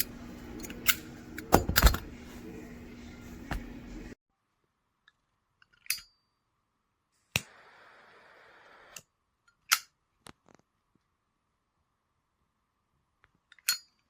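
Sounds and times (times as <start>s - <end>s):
butane torch jet hissing: 0.0s - 4.2s.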